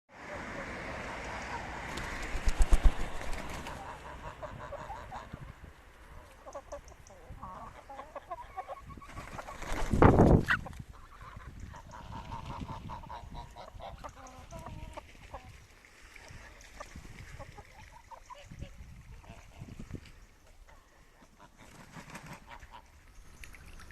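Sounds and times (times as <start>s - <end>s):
chickens clucking: 0.2s - 2.6s, 3.2s - 15.6s, 16.2s - 22.9s
geese honking: 3.6s - 5.4s.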